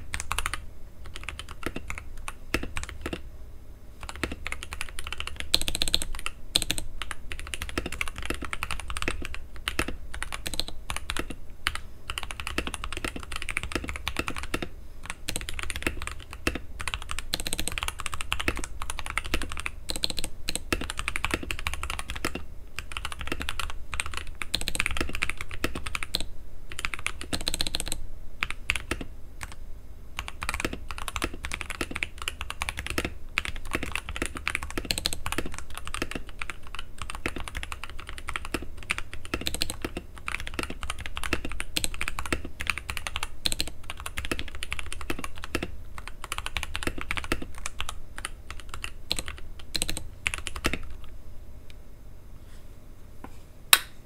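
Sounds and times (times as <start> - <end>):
fast mechanical keyboard typing: 0.0 - 3.2, 4.0 - 29.6, 30.2 - 51.1.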